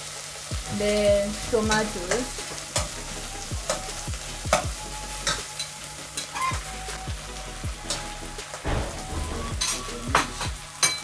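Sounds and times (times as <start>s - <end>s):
food sizzling in a frying pan: 0.0s - 11.0s
spoon knocking and scraping pan: 8.6s - 11.0s.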